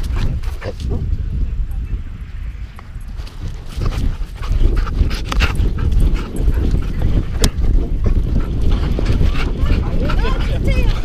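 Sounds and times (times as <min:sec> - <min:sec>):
dog panting: 0:03.4 - 0:11.0.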